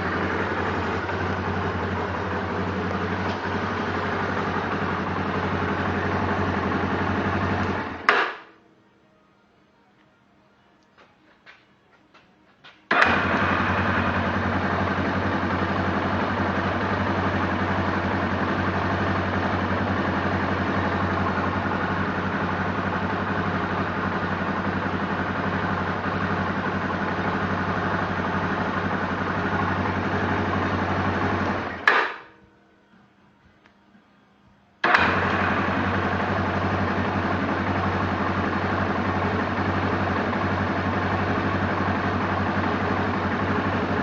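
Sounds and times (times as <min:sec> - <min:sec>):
engine idling: 0:00.0 - 0:08.6, 0:10.9 - 0:32.3, 0:34.8 - 0:44.0
engine shutdown knock: 0:34.8 - 0:37.1.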